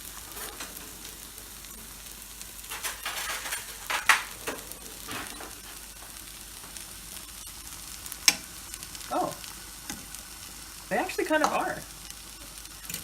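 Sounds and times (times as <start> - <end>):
pan clattering: 0.0 - 6.2
onions frying in oil: 0.0 - 13.0.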